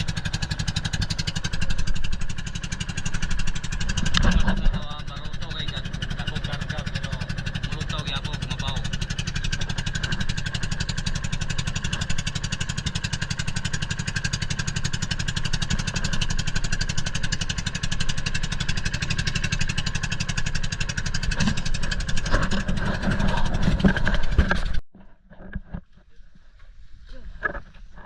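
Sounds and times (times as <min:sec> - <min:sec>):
small engine running: 0:00.0 - 0:24.8
knocks and clatter: 0:00.6 - 0:05.1, 0:17.3 - 0:25.9.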